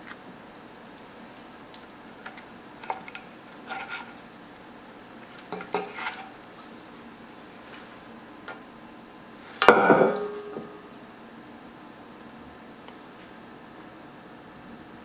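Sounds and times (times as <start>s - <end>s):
utensil clinking against pot: 5.3s - 6.9s, 9.6s - 10.8s.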